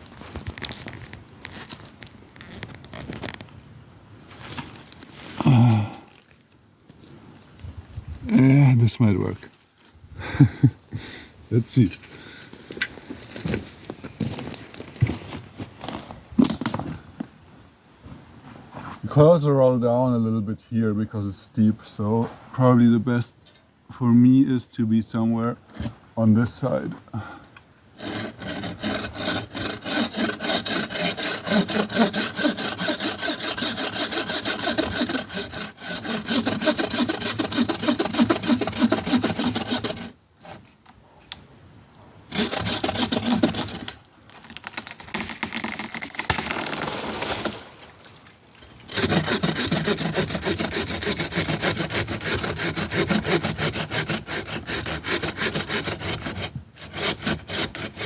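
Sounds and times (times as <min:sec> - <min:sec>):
handsaw cutting tree trunk: 0:28.0 - 0:40.7, 0:42.3 - 0:47.7, 0:48.9 - 0:58.0.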